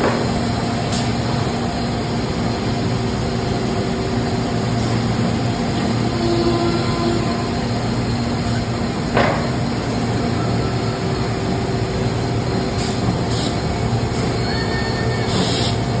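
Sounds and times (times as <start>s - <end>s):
machine mechanical hum: 0.0s - 16.0s
brief high hisses: 15.2s - 15.8s.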